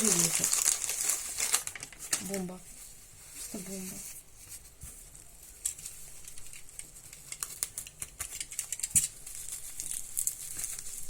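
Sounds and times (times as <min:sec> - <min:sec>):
bubble wrap crinkling: 0:00.0 - 0:11.0.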